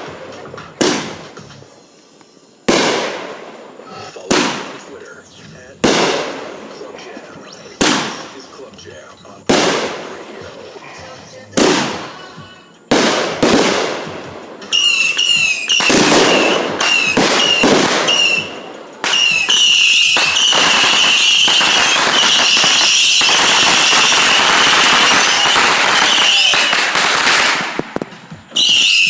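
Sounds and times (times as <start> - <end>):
fireworks blasts and crackling: 0.0 - 29.0
high whistle of fireworks: 14.6 - 27.8, 28.4 - 29.0.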